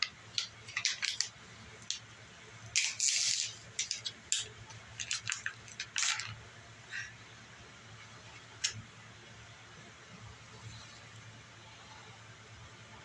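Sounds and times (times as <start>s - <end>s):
packaging rustling and crinkling: 0.4s - 1.3s, 4.9s - 6.4s.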